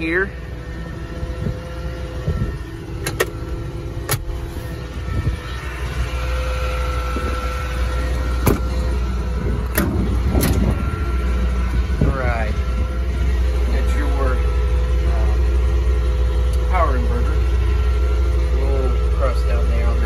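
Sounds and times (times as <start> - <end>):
truck engine idling: 0.0 - 20.0
clunks of doors and latches: 3.0 - 3.4, 4.0 - 4.4, 8.4 - 8.7, 9.7 - 10.7.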